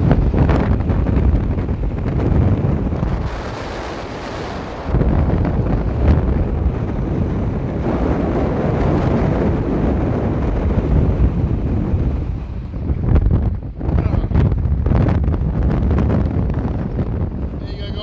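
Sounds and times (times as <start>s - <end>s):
wind buffeting microphone: 0.0s - 18.0s.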